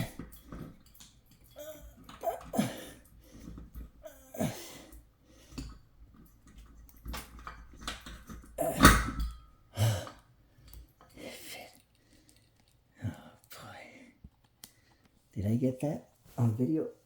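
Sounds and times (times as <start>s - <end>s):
man straining and breathing hard: 0.0s - 0.4s, 1.5s - 5.8s, 9.7s - 15.1s.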